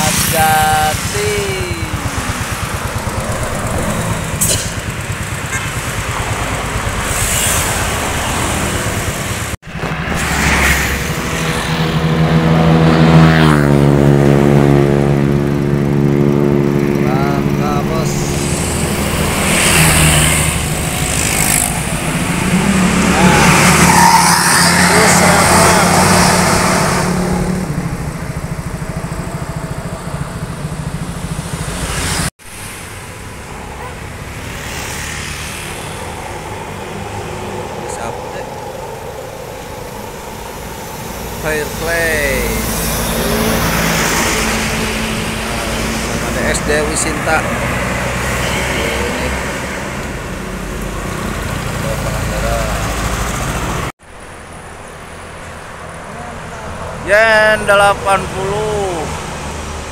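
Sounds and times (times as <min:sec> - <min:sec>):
bus engines pulling away: 0:00.0 - 0:59.9
passing vehicle rush: 0:00.0 - 0:59.9
steady droning tone: 0:09.7 - 0:24.0, 0:24.8 - 0:49.6.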